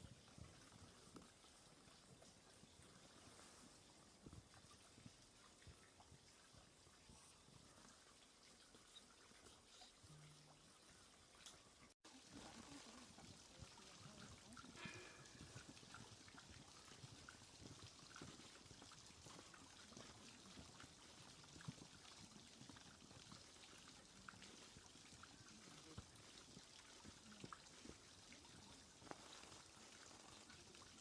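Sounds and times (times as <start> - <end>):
faint steady hiss: 0.0 - 22.2.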